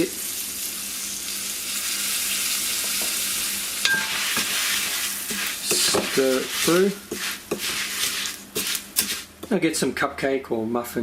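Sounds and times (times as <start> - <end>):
rice cereal crackling in a bowl: 4.1 - 9.3.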